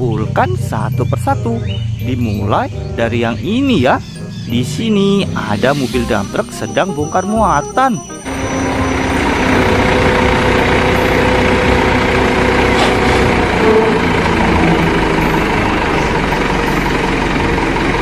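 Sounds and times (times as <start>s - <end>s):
truck engine running: 0.0s - 18.0s
dump truck unloading: 8.2s - 18.0s.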